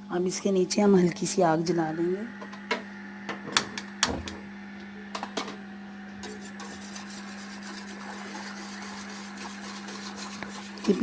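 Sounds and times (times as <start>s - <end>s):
constant low hum: 0.0s - 11.0s
whisk beating in a pot: 6.2s - 11.0s.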